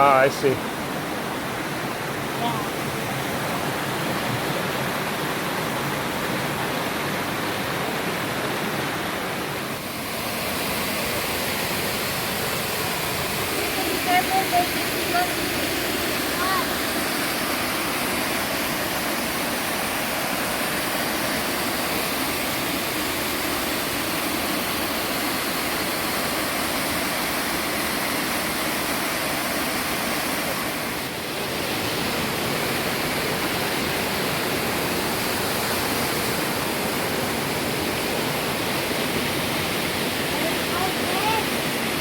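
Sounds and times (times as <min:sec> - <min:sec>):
waterfall roaring: 0:00.0 - 0:42.0.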